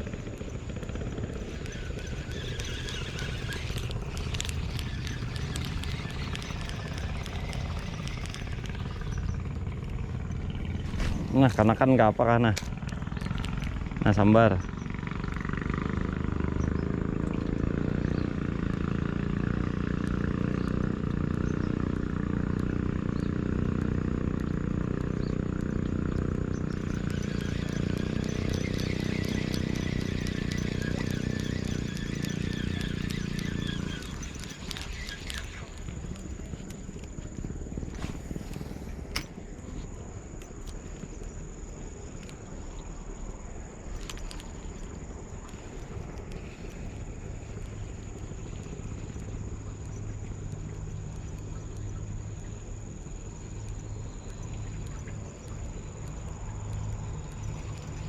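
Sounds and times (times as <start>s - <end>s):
high-pitched insect drone: 0.0s - 58.0s
low steady rumble: 0.0s - 58.0s
small engine running: 0.0s - 58.0s
sharp clicks: 1.2s - 10.0s, 23.6s - 39.4s.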